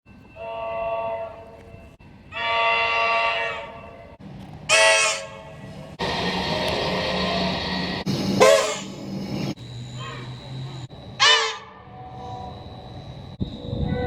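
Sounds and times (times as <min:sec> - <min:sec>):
electric train horn blasts: 0:00.3 - 0:01.6, 0:02.3 - 0:03.9, 0:04.7 - 0:05.7, 0:08.4 - 0:09.0, 0:11.2 - 0:12.6.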